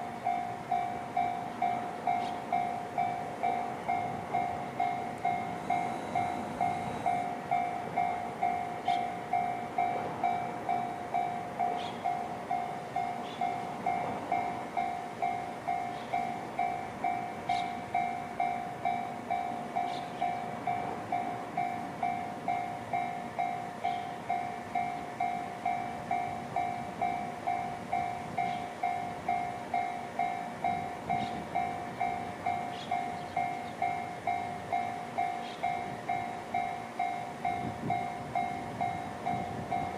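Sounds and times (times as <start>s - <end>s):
level crossing alarm dings: 0.0s - 39.9s.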